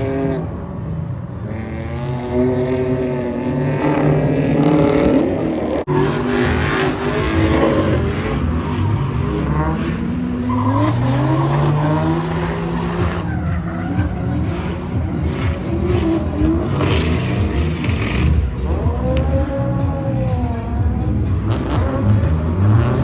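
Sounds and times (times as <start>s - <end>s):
car engine revving: 0.0s - 23.0s
tyres squealing: 8.4s - 23.0s.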